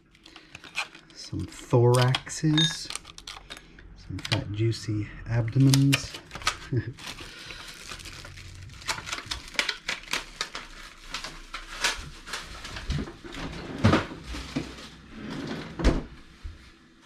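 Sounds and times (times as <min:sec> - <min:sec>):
hands handling packaging: 0:00.0 - 0:04.5, 0:05.4 - 0:13.2.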